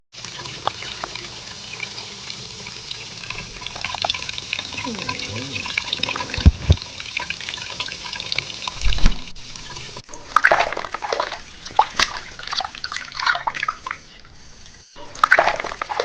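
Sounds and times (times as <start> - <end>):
water dripping: 0.2 - 14.0
water splashing and sloshing: 0.2 - 14.1, 15.0 - 16.0
low thump: 6.3 - 6.8.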